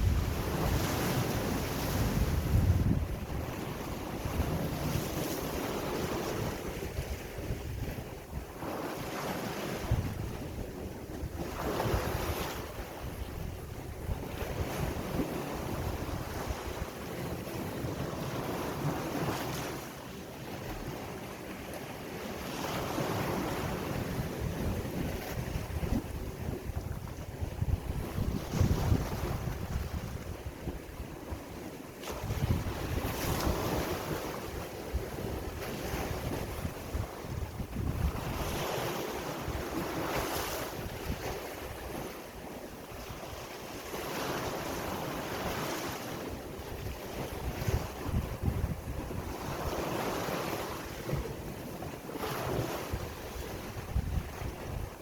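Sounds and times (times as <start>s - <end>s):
wind buffeting microphone: 0.0s - 19.4s, 23.0s - 42.1s, 42.9s - 55.0s
sea waves breaking: 0.0s - 55.0s.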